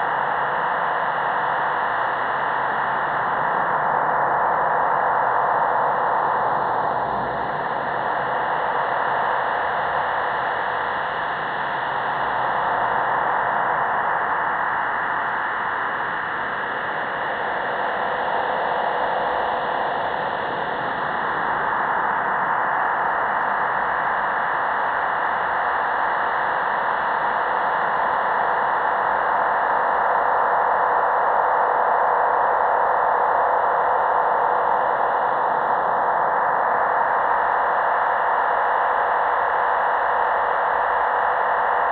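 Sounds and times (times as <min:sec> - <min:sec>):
faint steady tone: 0:00.0 - 0:41.9.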